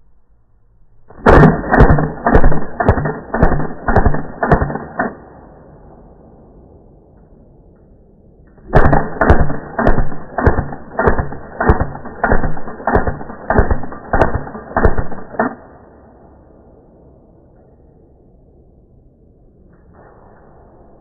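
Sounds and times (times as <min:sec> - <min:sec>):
airsoft pistol clacks: 0:01.7 - 0:05.2, 0:08.7 - 0:15.6.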